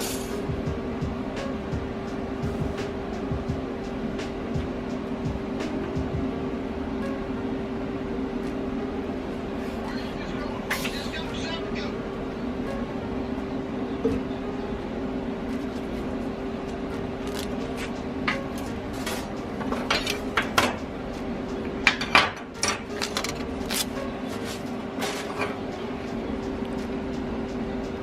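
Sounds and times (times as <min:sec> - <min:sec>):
steady electrical hum: 0:00.0 - 0:28.0
metal tools clinking and scraping: 0:18.3 - 0:20.8, 0:21.9 - 0:25.6.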